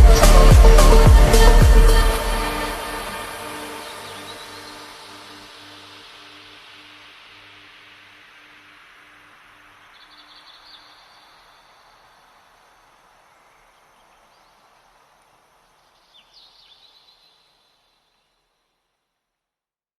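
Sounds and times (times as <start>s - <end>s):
soft wind-like hiss: 0.0s - 19.1s.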